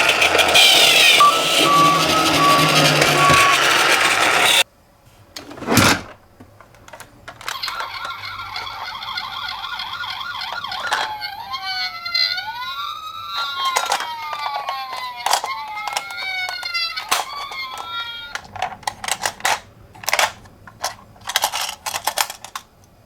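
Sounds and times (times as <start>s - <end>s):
toy sirens wailing: 0.0s - 4.6s, 7.4s - 20.2s.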